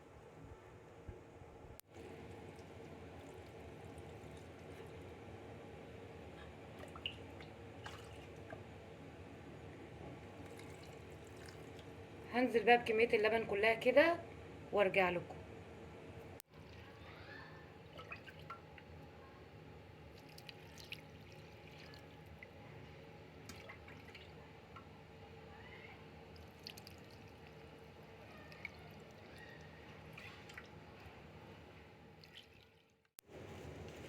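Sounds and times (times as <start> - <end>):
low steady hum: 0.0 - 32.7
milk trickling and dripping: 2.0 - 5.1, 6.8 - 8.6, 10.2 - 12.0, 20.0 - 22.6, 23.4 - 24.9, 26.2 - 31.2, 32.2 - 32.9.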